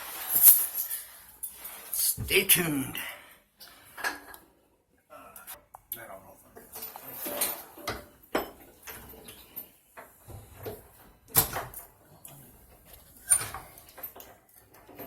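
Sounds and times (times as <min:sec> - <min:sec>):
faucet parts knocking and scraping: 0:06.6 - 0:11.8.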